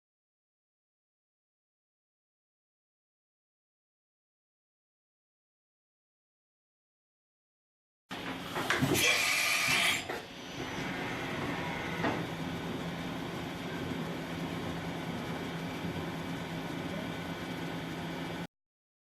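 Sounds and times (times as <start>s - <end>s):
milling machine hum: 8.1s - 18.5s.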